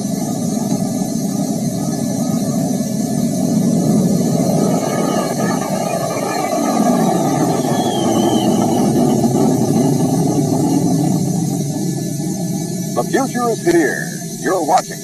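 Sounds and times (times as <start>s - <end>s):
jet engines rushing: 0.0s - 15.0s
faint short whistle: 7.3s - 9.4s.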